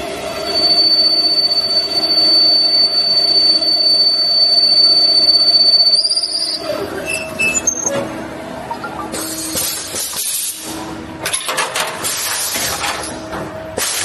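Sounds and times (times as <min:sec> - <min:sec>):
lathe high-pitched whine: 0:00.0 - 0:06.6
low machine hum: 0:00.0 - 0:10.0.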